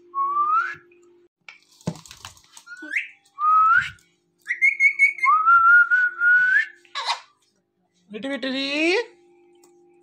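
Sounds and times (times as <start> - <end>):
parrot whistling: 2.7 - 7.3.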